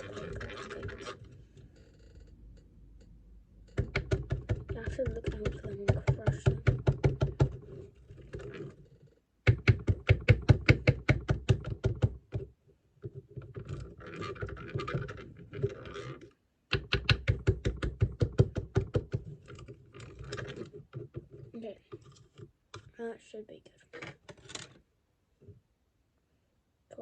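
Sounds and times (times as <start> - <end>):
scratchy stirring: 0.0 - 1.8, 3.8 - 9.1, 13.0 - 16.3, 19.1 - 23.0.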